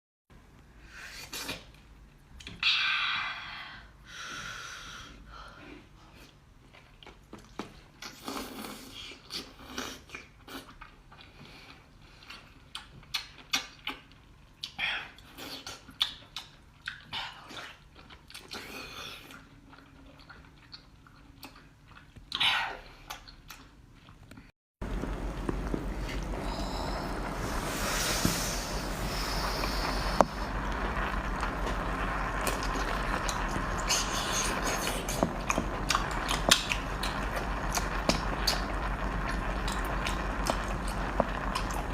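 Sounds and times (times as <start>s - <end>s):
person chewing seafood: 6.1s - 14.8s, 15.8s - 22.4s, 23.0s - 24.5s.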